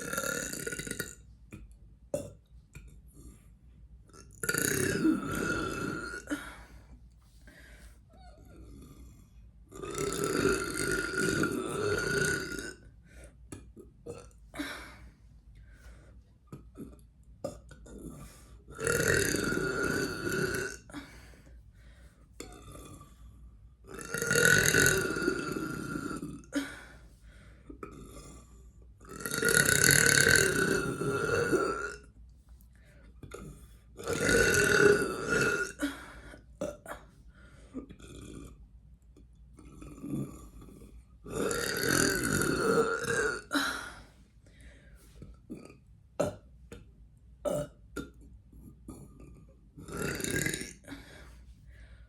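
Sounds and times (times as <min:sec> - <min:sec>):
person belching: 0:00.0 - 0:01.2, 0:04.2 - 0:06.6, 0:09.7 - 0:12.8, 0:16.5 - 0:21.0, 0:22.4 - 0:23.0, 0:23.9 - 0:26.8, 0:29.0 - 0:32.1, 0:33.3 - 0:36.0, 0:36.6 - 0:37.0, 0:37.8 - 0:38.5, 0:39.6 - 0:43.9, 0:45.5 - 0:46.4, 0:47.4 - 0:48.2, 0:48.9 - 0:51.1.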